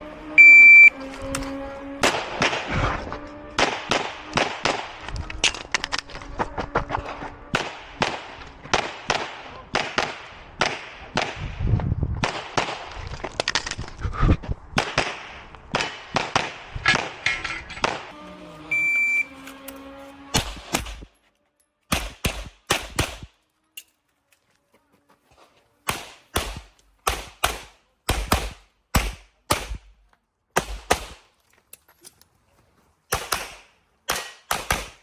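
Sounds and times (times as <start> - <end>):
shot timer beep: 0.4 - 1.0, 18.7 - 19.4
handgun shots: 21.9 - 23.3, 25.9 - 30.0, 30.6 - 31.3, 33.1 - 35.0.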